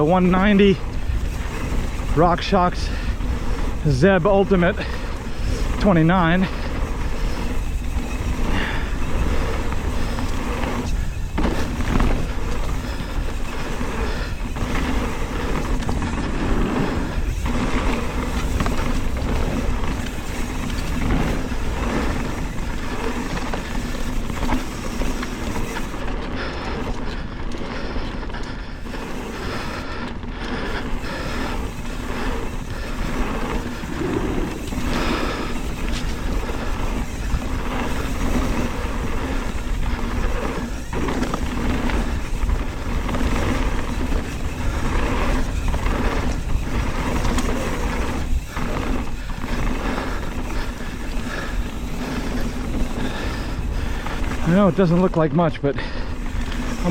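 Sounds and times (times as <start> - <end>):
bike knocks and rattles: 0.0 - 27.9, 28.6 - 55.0
tyres rolling over dirt: 0.0 - 56.9
wind rushing over microphone: 28.8 - 55.0.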